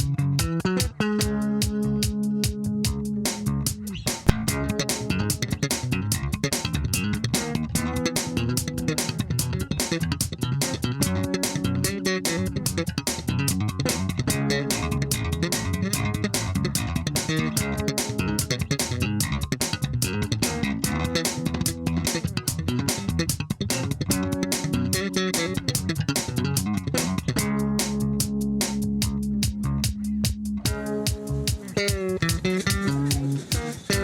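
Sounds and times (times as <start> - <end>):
bass and guitar music with drums: 0.0 - 34.0.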